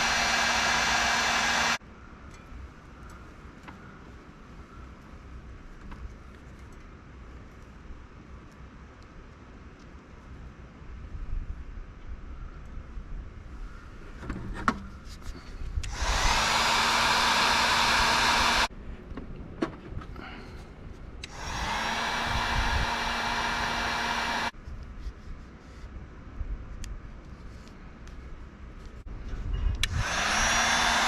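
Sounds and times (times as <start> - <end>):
heat gun blowing: 0.0 - 1.8, 15.8 - 18.7, 21.2 - 24.5, 29.8 - 31.0.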